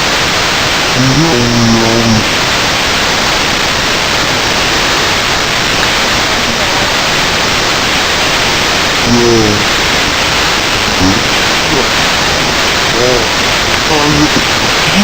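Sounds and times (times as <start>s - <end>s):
low pitched call or voice: 0.9s - 2.4s, 9.0s - 10.1s, 10.7s - 15.0s.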